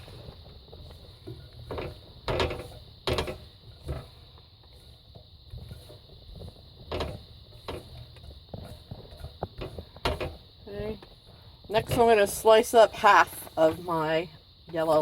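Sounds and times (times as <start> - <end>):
utensil scraping frying pan: 0.0 - 10.5.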